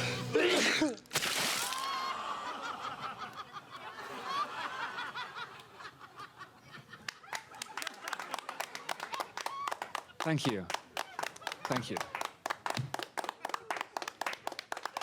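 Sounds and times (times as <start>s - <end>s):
man sneezing: 0.3s - 1.0s
audience laughter: 1.9s - 9.4s.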